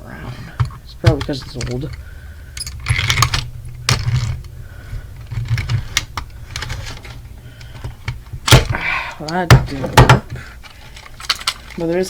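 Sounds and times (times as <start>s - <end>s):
steady low hum: 0.0s - 12.0s
alarm clock clicks and rattles: 1.0s - 2.0s, 10.0s - 12.0s.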